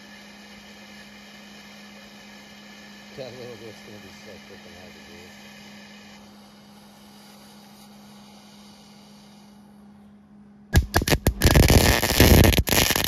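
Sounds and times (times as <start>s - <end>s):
welding arc crackling: 10.8s - 13.0s.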